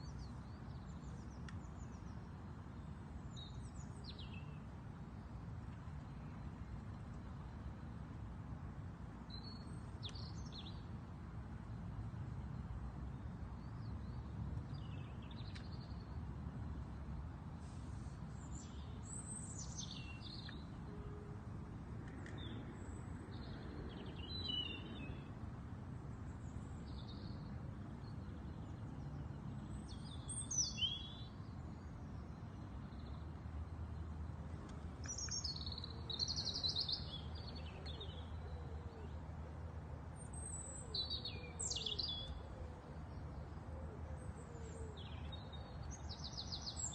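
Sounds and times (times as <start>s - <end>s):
songbirds chirping: 0.0s - 46.9s.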